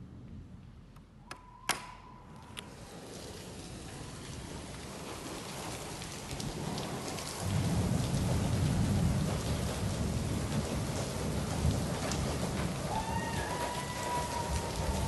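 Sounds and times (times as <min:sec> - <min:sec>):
rain falling: 0:02.0 - 0:15.0
thunder rumbling: 0:02.0 - 0:15.0.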